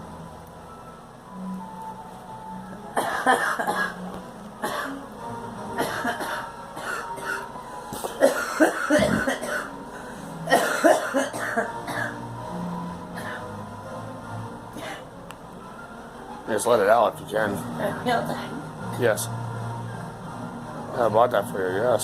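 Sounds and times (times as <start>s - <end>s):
girl coughing: 3.0s - 4.0s, 4.6s - 5.0s, 5.8s - 7.5s, 8.1s - 9.7s, 10.5s - 12.2s.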